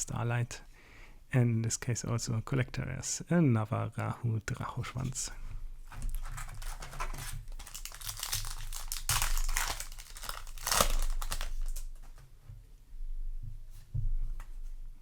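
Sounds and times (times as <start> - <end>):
foil wrapper crinkling and tearing: 5.9 - 12.0.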